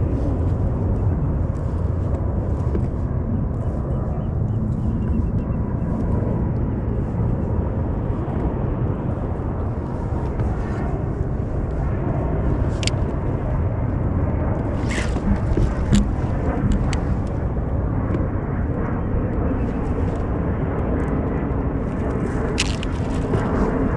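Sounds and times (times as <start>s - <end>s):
wind buffeting microphone: 0.0s - 23.9s.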